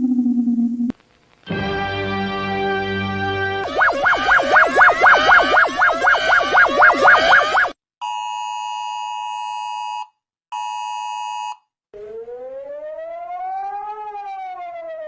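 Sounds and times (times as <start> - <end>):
siren wail: 3.3 - 7.8, 12.0 - 15.0.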